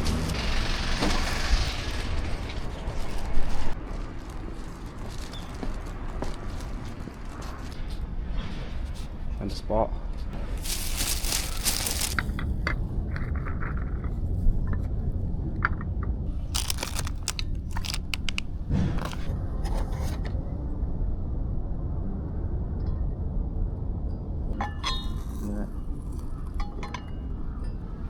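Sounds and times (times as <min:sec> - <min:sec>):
grill scraping and clicks: 0:16.3 - 0:20.3.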